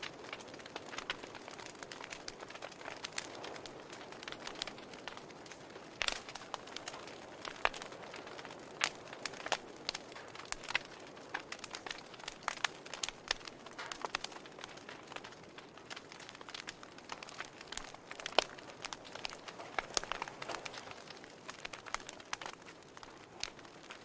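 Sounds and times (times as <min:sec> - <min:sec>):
fireplace fire crackling: 0:00.0 - 0:24.0.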